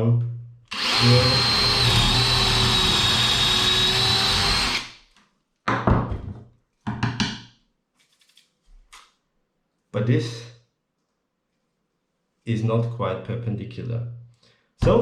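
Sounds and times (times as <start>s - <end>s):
cordless drill whining into wood: 0.7s - 5.0s.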